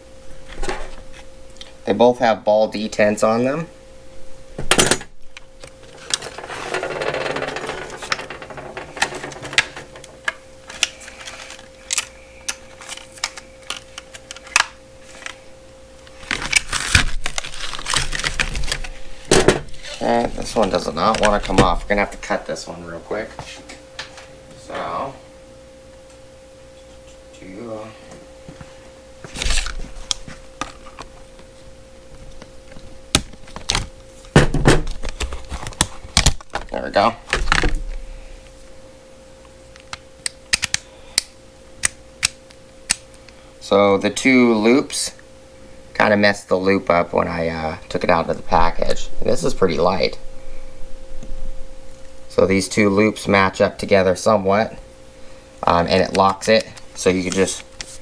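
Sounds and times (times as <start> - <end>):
faint steady hum: 0.0 - 58.0
packaging rustling and scraping: 5.8 - 15.4, 16.0 - 22.1, 29.2 - 31.6, 32.2 - 36.8, 56.9 - 58.0
stiff plastic crackling: 16.1 - 22.3, 34.8 - 37.8.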